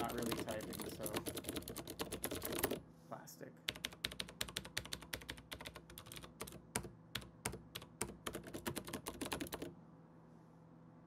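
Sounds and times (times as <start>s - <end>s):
clicky keyboard keys mashed: 0.0s - 2.8s, 3.7s - 9.7s.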